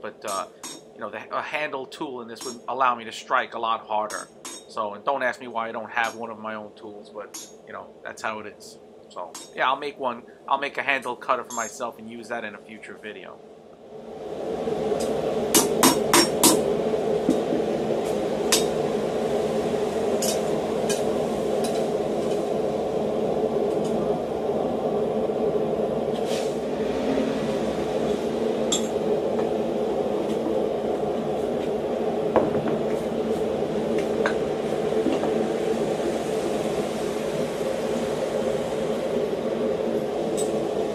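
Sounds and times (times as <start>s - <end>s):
steady rushing noise: 0.0s - 40.9s
hammer blows on steel anvil: 0.2s - 0.9s, 11.0s - 11.9s.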